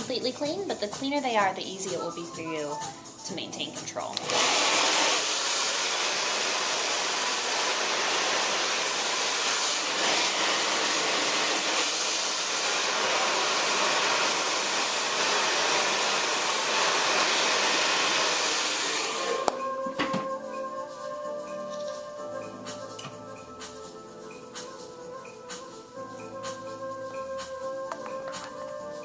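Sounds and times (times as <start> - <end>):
blow dryer running: 4.1 - 20.4.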